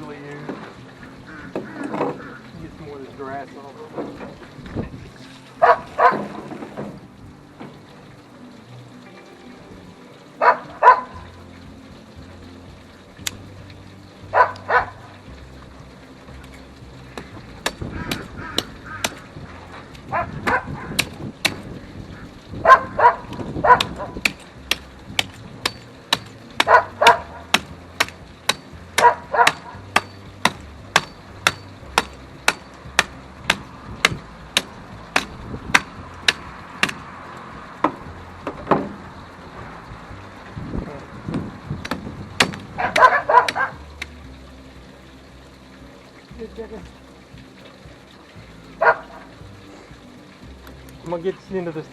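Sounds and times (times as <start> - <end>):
dog barking: 5.6 - 6.3, 10.4 - 11.2, 14.3 - 15.0, 20.1 - 20.9, 22.6 - 24.2, 26.6 - 27.3, 29.0 - 29.8, 42.8 - 43.8, 48.8 - 49.2
hand tool chopping strikes: 17.2 - 19.3, 20.4 - 21.7, 23.3 - 37.1, 41.8 - 44.2.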